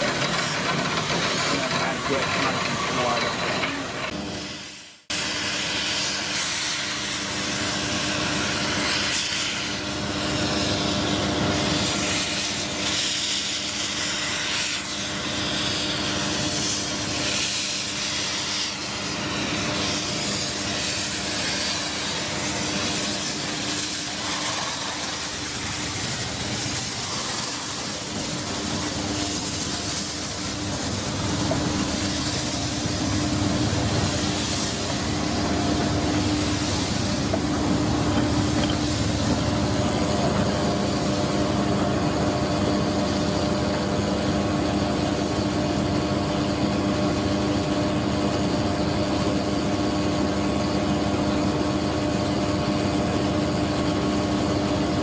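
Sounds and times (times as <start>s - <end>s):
train running: 0.0s - 4.2s, 20.8s - 41.2s.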